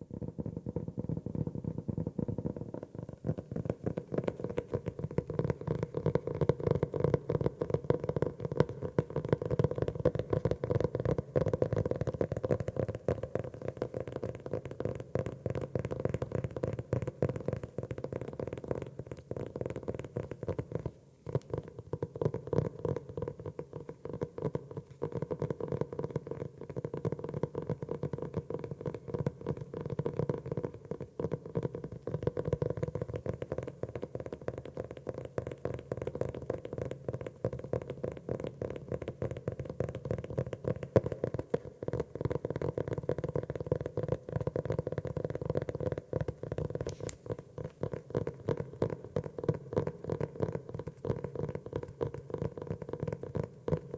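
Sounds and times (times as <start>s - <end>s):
fingers tapping on notebook cover: 16.1s - 53.9s.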